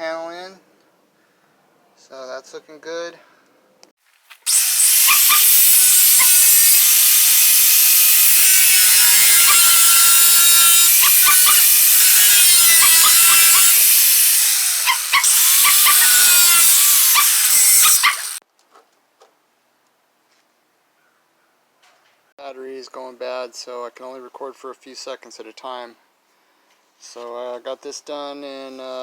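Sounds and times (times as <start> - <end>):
welding crackling sizzle: 4.2 - 18.4.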